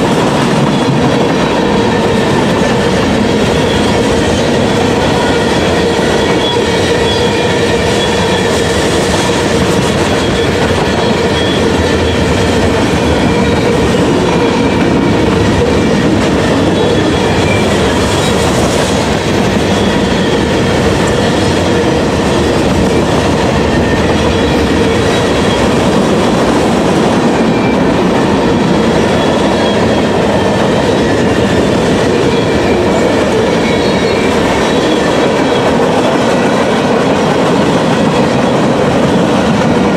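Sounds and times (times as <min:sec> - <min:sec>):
freight train wheels on rail: 0:00.0 - 0:39.9.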